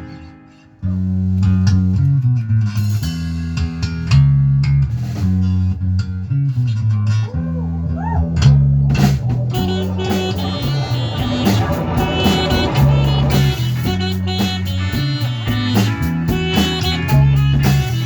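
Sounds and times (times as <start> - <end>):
bass guitar riff: 0.0 - 18.0
electric guitar: 5.8 - 18.0.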